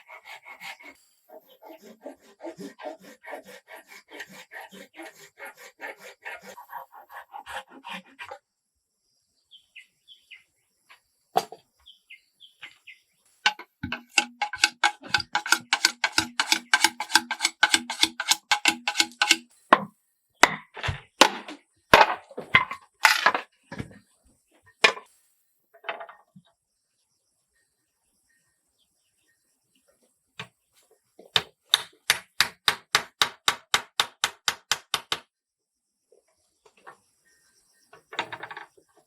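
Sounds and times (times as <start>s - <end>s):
hand tool knocking on wood: 13.5s - 19.9s, 31.4s - 35.3s.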